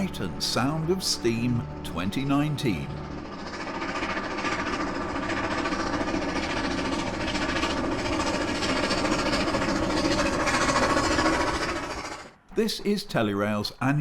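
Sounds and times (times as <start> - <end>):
steam locomotive chugging: 0.0 - 13.8.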